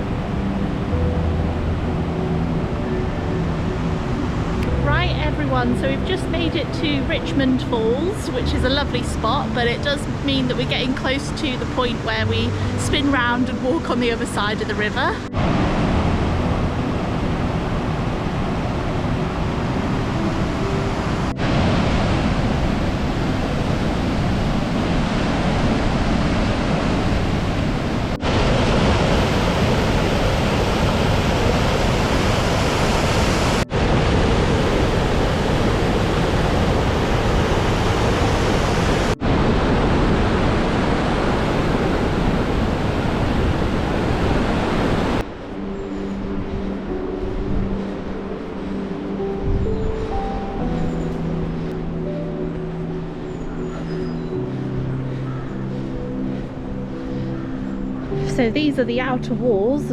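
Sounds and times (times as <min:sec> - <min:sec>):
music: 0:00.0 - 0:30.0, 0:45.2 - 0:59.9
waterfall rushing: 0:00.0 - 0:58.9.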